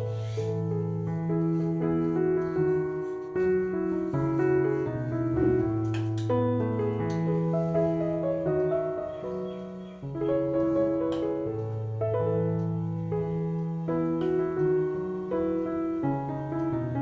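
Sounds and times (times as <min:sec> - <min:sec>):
soft piano chords: 0:00.0 - 0:17.0
sustained bass notes: 0:05.0 - 0:06.6.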